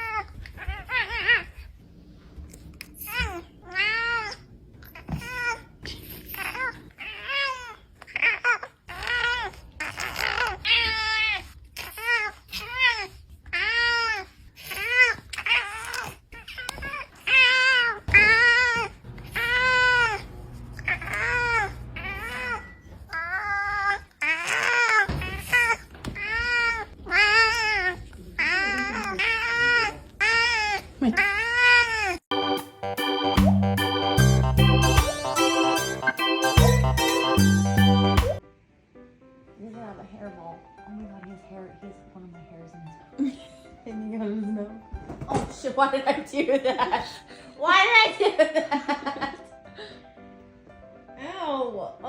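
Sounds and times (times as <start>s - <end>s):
cat meowing: 20.9s - 25.6s
electric piano music: 32.3s - 38.4s.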